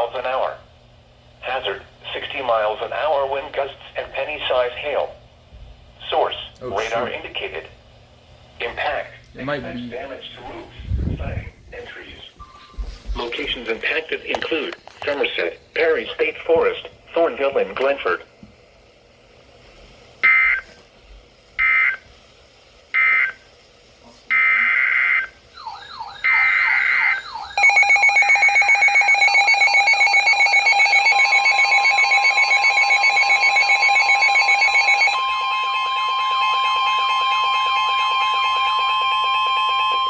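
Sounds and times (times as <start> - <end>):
steady alarm tone: 20.2 - 20.7, 21.6 - 22.1, 22.9 - 23.5, 24.3 - 40.0
pulsing electronic alert tone: 25.6 - 40.0.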